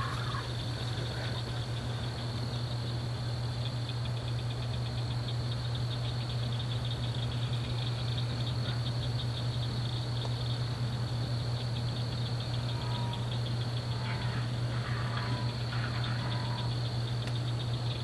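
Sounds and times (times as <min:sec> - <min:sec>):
faint animal call: 0:00.0 - 0:02.3, 0:12.4 - 0:17.1
constant low hum: 0:00.0 - 0:18.0
crickets chirping: 0:00.0 - 0:18.0.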